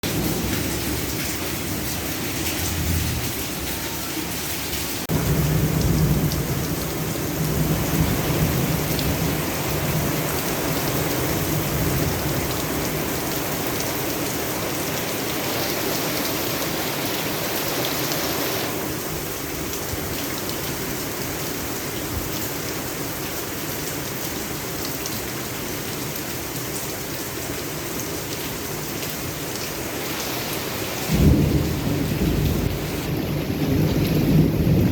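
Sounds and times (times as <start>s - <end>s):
heavy rain pouring: 0.0s - 34.9s
thunder rumbling: 5.1s - 13.2s, 31.0s - 34.9s.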